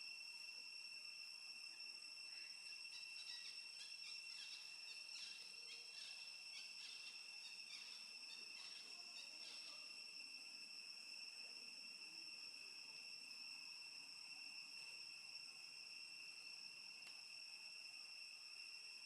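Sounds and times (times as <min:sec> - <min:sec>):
insect trilling: 0:00.2 - 0:19.0.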